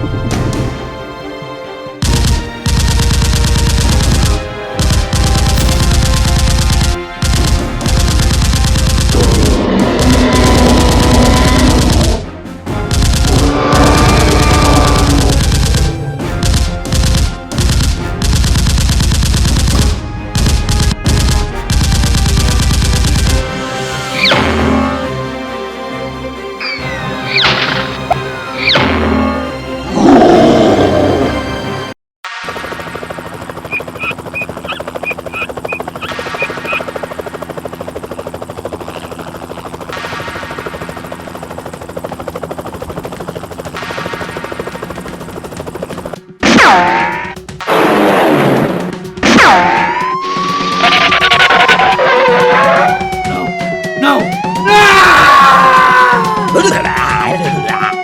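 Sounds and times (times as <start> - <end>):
helicopter rotor chopping: 0.0 - 25.3, 26.6 - 28.8, 32.3 - 46.4, 47.0 - 58.0
cartoon background music: 0.0 - 37.3, 43.6 - 58.0
loud rattling bursts: 2.0 - 23.9, 32.4 - 46.3.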